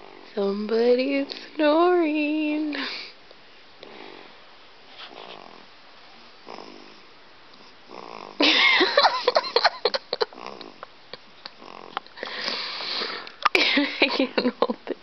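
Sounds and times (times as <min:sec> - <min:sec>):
soft snoring breaths: 0:00.0 - 0:01.6, 0:03.8 - 0:08.4, 0:10.3 - 0:10.9, 0:11.5 - 0:13.4.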